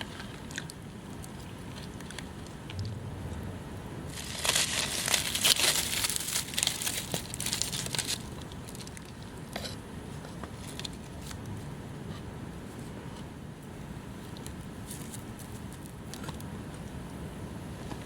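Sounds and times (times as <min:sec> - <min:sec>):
scattered crackles: 0:04.1 - 0:09.3
crinkling and crumpling: 0:04.1 - 0:13.3, 0:14.2 - 0:16.9.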